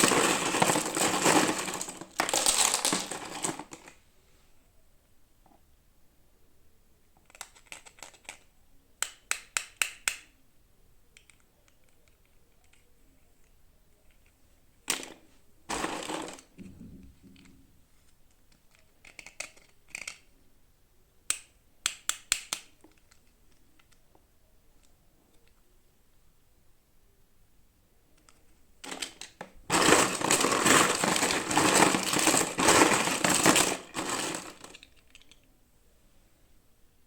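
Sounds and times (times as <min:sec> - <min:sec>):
packaging crackle: 0:00.0 - 0:04.0, 0:28.9 - 0:35.3
sharp plastic clicks: 0:07.2 - 0:10.3, 0:18.5 - 0:20.3, 0:21.3 - 0:24.0.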